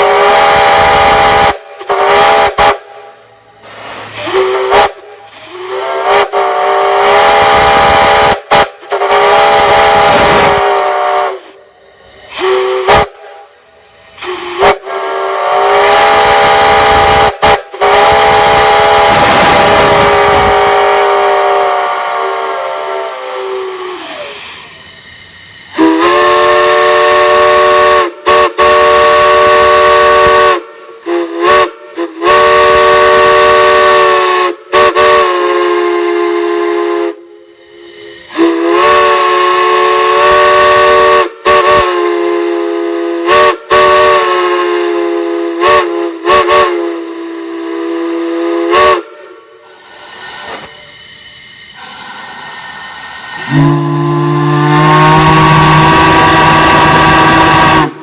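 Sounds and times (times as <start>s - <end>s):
steam hiss: 0.0s - 58.0s
chime whistle blasts: 53.4s - 55.0s.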